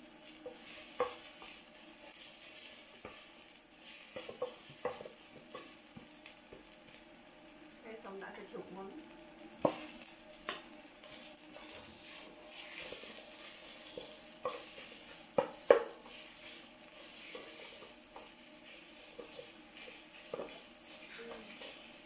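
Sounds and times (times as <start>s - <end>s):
food sizzling in a pot: 0.0s - 22.0s
utensil stirring and scraping: 0.1s - 6.7s, 9.6s - 22.0s.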